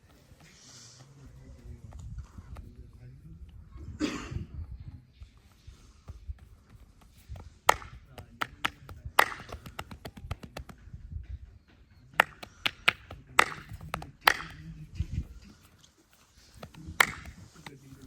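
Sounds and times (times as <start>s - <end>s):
hand chops and slaps on body: 7.7s - 10.7s, 12.2s - 14.6s, 16.6s - 17.8s.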